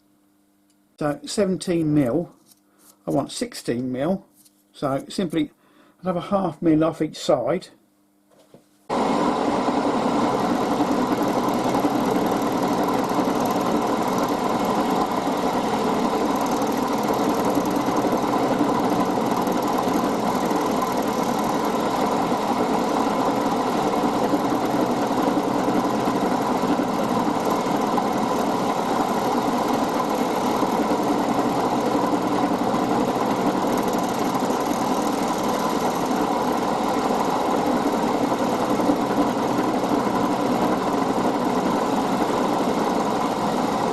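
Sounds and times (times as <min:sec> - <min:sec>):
milling machine humming: 0:08.9 - 0:43.9.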